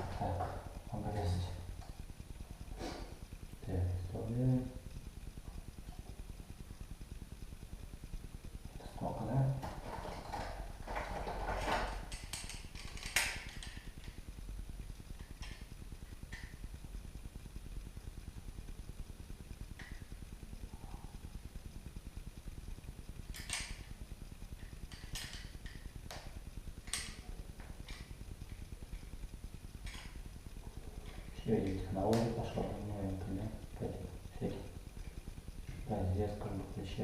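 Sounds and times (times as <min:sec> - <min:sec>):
steady low hum: 0:00.0 - 0:37.0
small clicks of cable fitting: 0:23.3 - 0:23.8, 0:24.6 - 0:29.0.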